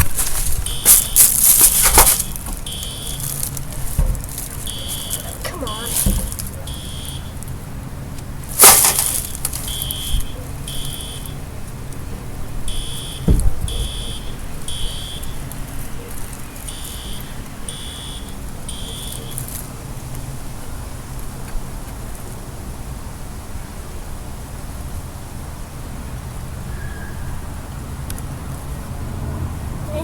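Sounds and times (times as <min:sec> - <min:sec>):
fire alarm horn beeps: 0:00.6 - 0:03.9, 0:04.6 - 0:07.5, 0:08.6 - 0:11.5, 0:12.7 - 0:19.5
low thump: 0:03.9 - 0:04.5, 0:13.0 - 0:14.3.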